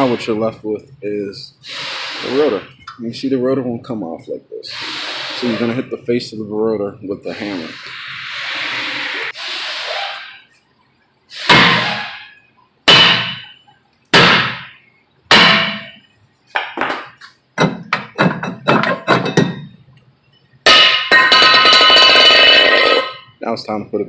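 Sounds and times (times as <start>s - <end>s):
hammer striking brake rotor: 11.4s - 12.2s, 12.9s - 13.6s, 14.2s - 16.0s, 20.7s - 23.3s.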